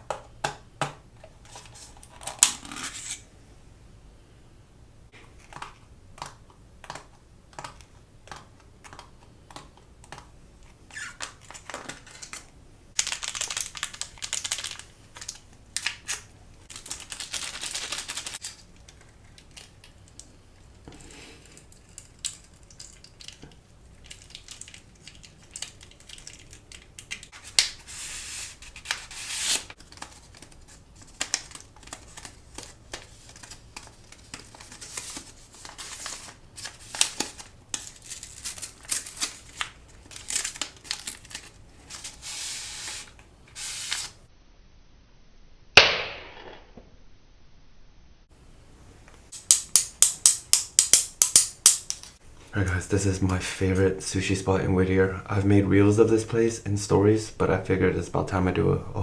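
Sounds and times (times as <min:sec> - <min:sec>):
packaging clicks and taps: 0:05.2 - 0:16.0
packaging crinkling rustles: 0:10.1 - 0:44.2.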